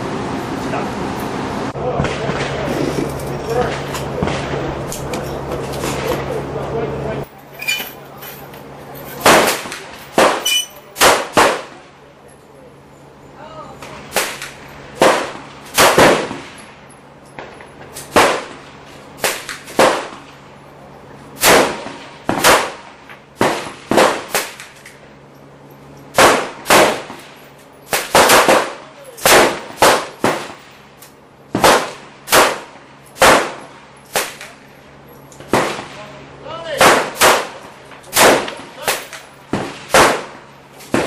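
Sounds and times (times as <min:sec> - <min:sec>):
rifle firing single shots: 0:26.2 - 0:27.2, 0:27.9 - 0:30.6, 0:31.5 - 0:34.6, 0:36.8 - 0:41.0.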